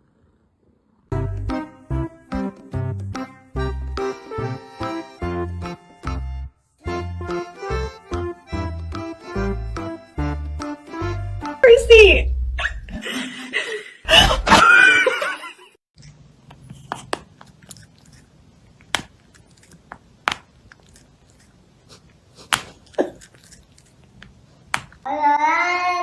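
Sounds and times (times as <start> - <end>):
cat chewing crunches: 16.0 - 25.0.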